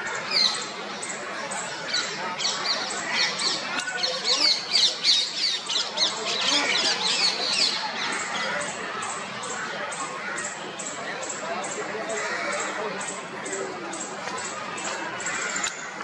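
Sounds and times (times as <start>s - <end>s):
birds chirping: 0.0s - 16.0s
crowd chatter: 0.0s - 16.0s.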